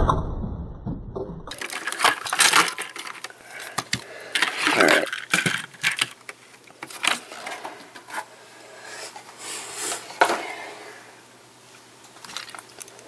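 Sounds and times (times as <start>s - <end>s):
plastic pieces clicking and knocking: 1.5s - 8.2s, 12.1s - 13.0s
packaging rustling: 1.5s - 8.3s, 12.0s - 13.0s.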